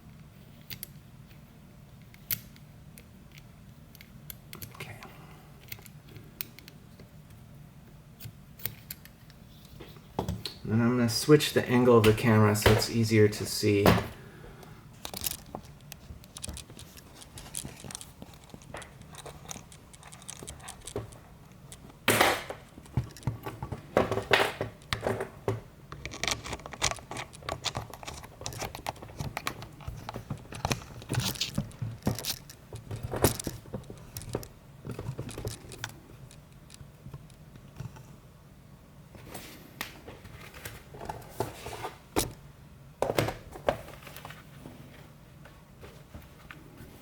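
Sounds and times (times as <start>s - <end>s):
metal lock parts clicking: 15.0s - 23.6s, 25.9s - 38.0s.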